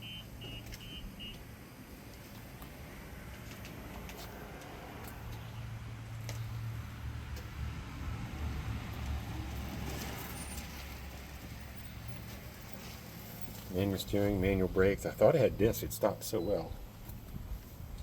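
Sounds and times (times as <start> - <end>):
vehicle engine rumble: 0.0 - 18.0.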